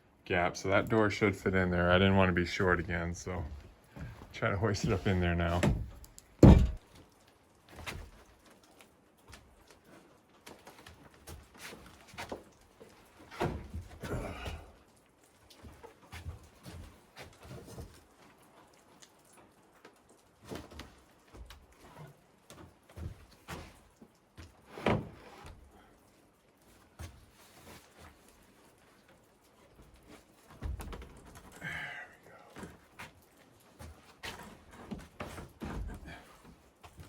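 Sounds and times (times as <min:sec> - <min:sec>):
wooden door thumps and knocks: 0:05.6 - 0:06.8.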